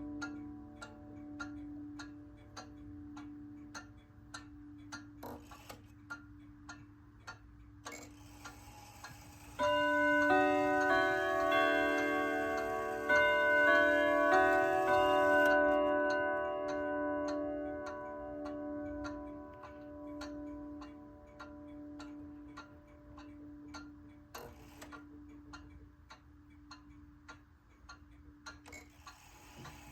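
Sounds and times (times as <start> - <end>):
wall clock ticking: 0.0 - 29.9
clock chime melody: 9.6 - 22.5.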